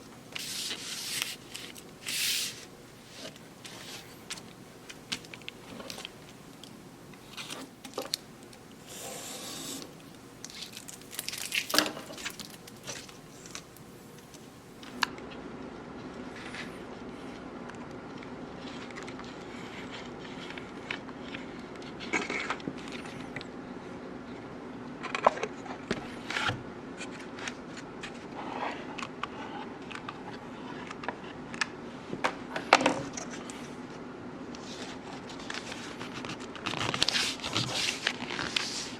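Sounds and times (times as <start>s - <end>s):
low steady hum: 0.0s - 38.9s
wood and tools rubbing and scraping: 0.4s - 4.2s.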